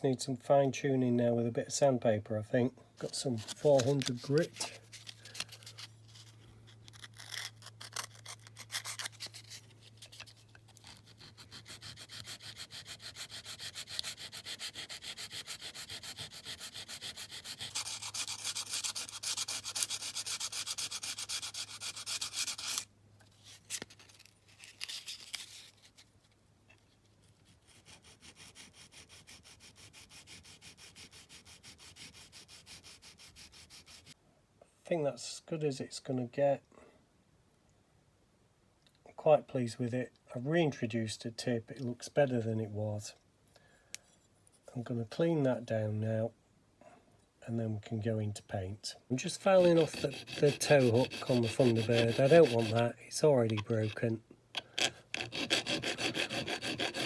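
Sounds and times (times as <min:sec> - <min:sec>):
sandpaper rubbing on metal: 0:11.0 - 0:22.8, 0:49.2 - 0:54.0, 0:54.8 - 0:57.0.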